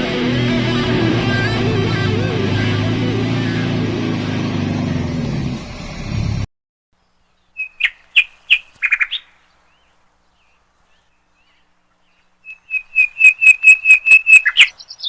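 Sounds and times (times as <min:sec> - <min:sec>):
guitar music: 0:00.0 - 0:06.0
high bird-like chirps: 0:12.5 - 0:15.0.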